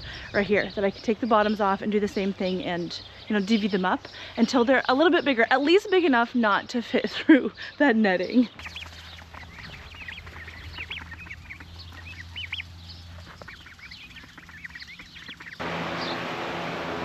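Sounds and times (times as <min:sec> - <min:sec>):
young poultry cheeping: 0:08.4 - 0:16.2.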